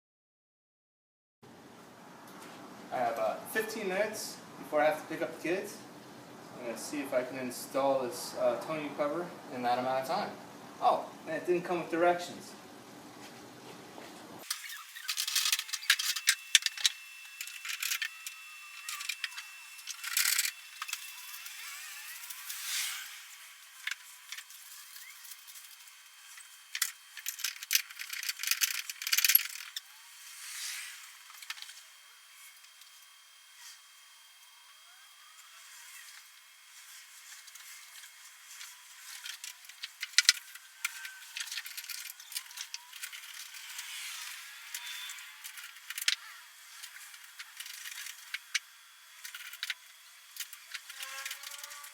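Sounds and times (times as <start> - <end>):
hardware clicks and rattles: 26.7 - 29.8.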